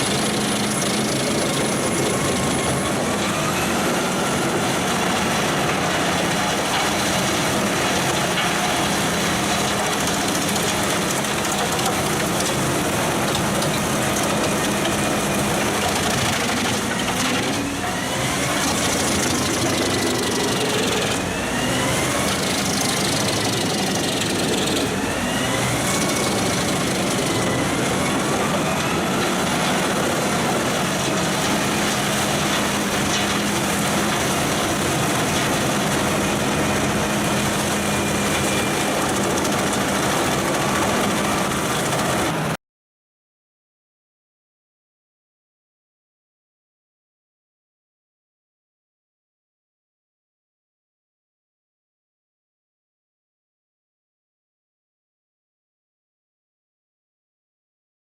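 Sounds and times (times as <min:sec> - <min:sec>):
wood chipper running: 0:00.0 - 0:42.6.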